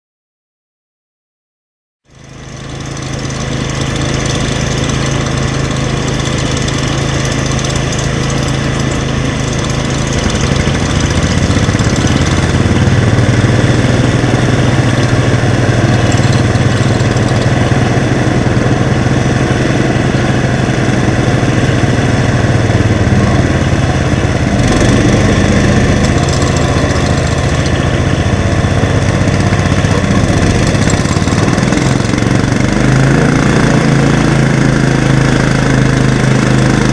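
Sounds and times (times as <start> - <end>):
garden tractor engine droning: 2.1 - 36.9.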